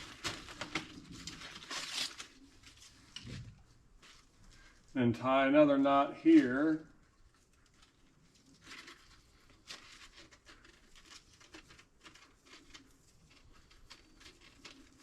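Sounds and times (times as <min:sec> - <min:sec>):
twine rustling and scraping: 0:06.2 - 0:15.0.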